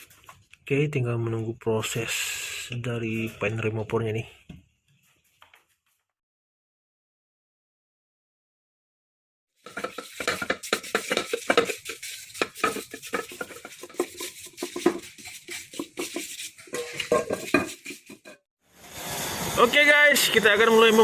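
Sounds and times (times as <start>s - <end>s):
metal clinking and scraping: 9.6s - 18.4s.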